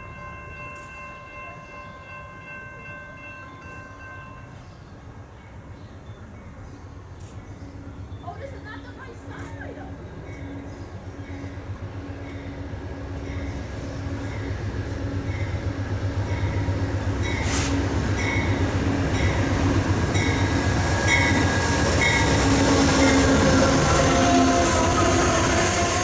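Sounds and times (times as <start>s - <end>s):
train bell ringing: 0.0s - 26.0s
diesel train rumble: 5.0s - 26.0s.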